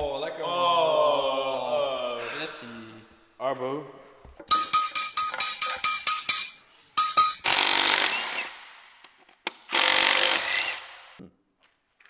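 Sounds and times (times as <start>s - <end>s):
power tool running: 7.4s - 8.8s, 9.5s - 11.2s.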